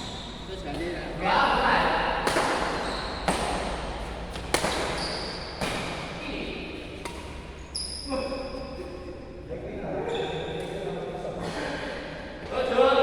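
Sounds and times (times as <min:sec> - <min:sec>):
rackets striking shuttlecock: 0:02.2 - 0:06.1, 0:07.0 - 0:07.6.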